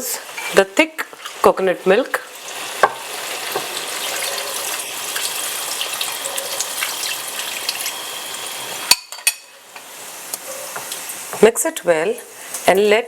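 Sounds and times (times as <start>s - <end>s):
thick liquid pouring into pot: 2.2s - 8.6s.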